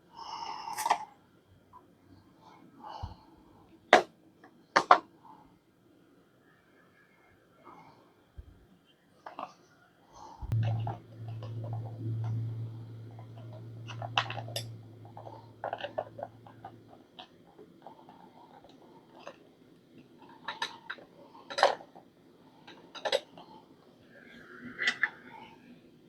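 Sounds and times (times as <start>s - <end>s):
low steady hum: 10.4s - 17.0s.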